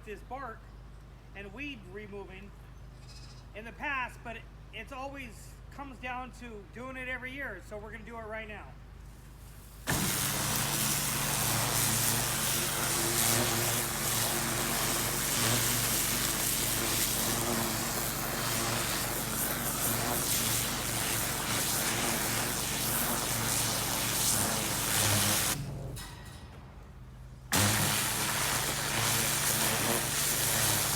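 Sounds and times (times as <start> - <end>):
pressure washer spraying: 9.6 - 25.9, 27.5 - 30.9.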